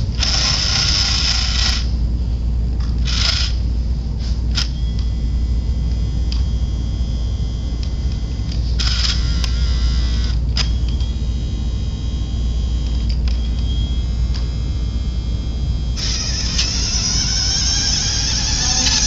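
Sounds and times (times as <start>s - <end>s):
steady low rumble: 11.4s - 19.0s
small electric motor whirring: 16.0s - 19.0s.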